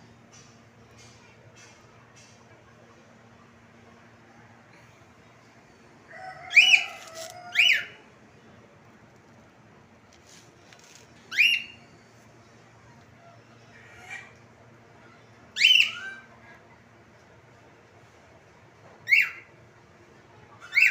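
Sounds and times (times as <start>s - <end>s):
cockatiel whistled calls: 11.3s - 11.8s, 15.6s - 16.2s.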